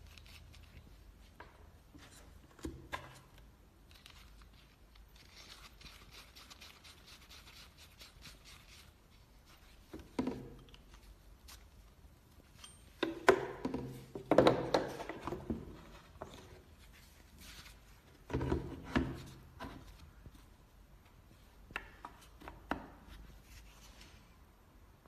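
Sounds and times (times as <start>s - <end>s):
tools being handled: 12.3s - 13.3s.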